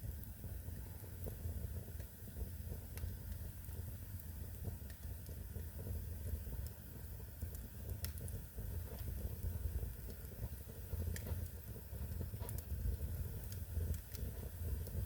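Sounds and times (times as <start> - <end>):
low rumble of fire: 0.0 - 15.0
wood fire crackling and popping: 0.0 - 15.0.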